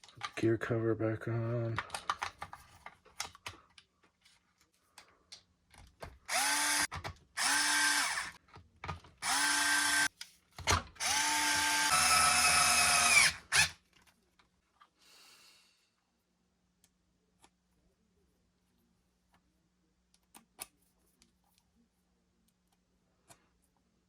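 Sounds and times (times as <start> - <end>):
power screwdriver whining: 6.3 - 8.4, 9.2 - 10.1, 11.0 - 13.8.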